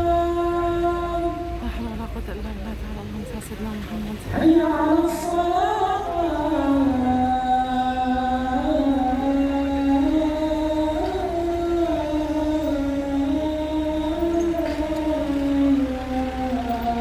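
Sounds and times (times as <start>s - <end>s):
man chanting call to prayer: 0.0s - 1.8s, 4.2s - 17.0s.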